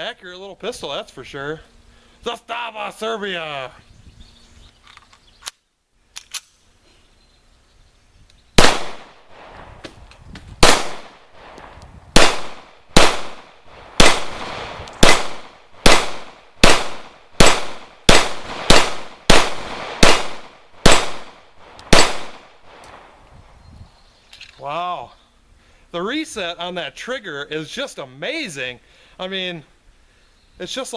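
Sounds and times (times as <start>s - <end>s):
pistol shots echoing: 8.6s - 9.6s, 10.6s - 11.5s, 12.2s - 22.6s.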